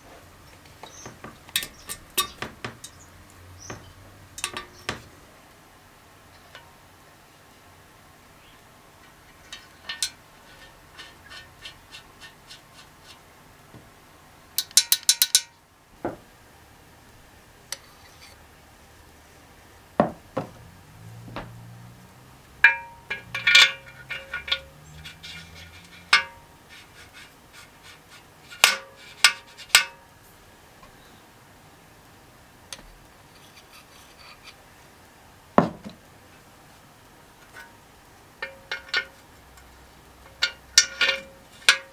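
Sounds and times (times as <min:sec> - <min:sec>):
metal parts and tools clinking: 0:00.8 - 0:05.2, 0:09.0 - 0:11.5, 0:14.6 - 0:15.6, 0:22.6 - 0:26.9, 0:38.4 - 0:39.7, 0:40.3 - 0:41.9.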